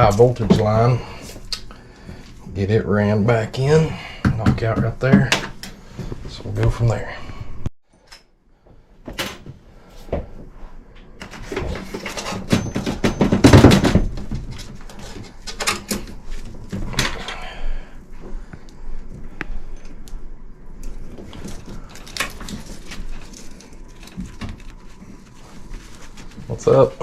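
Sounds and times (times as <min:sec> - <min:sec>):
wiring rustling and scraping: 0:00.0 - 0:03.9, 0:10.9 - 0:27.0.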